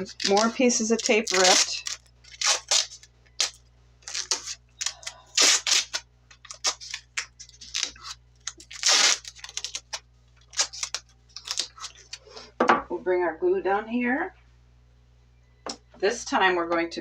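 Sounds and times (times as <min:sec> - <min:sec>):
tape pulled off roll: 0:04.1 - 0:09.8.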